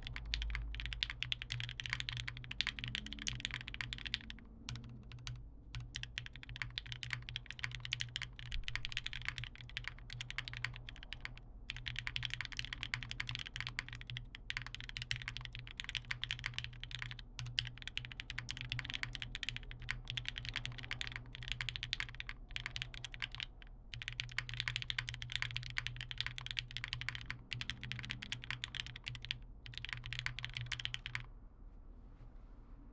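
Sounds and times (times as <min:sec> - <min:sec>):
fast typing on mechanical keyboard: 0:00.0 - 0:31.3.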